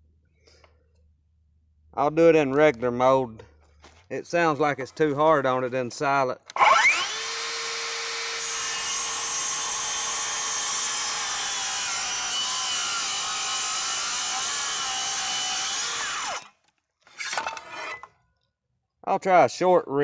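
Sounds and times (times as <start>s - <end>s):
circular saw cutting wood: 6.5s - 16.6s
saw blade winding down: 6.5s - 16.6s.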